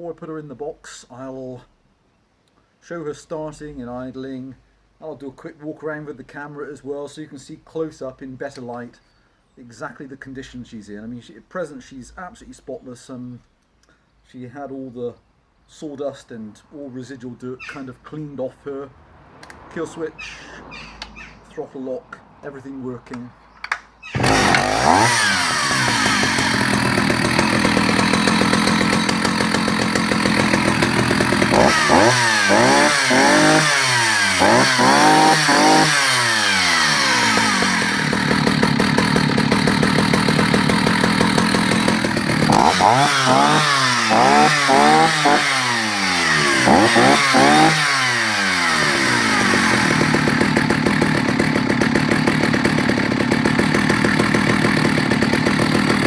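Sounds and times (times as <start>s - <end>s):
chainsaw idling and revving: 23.6s - 56.0s.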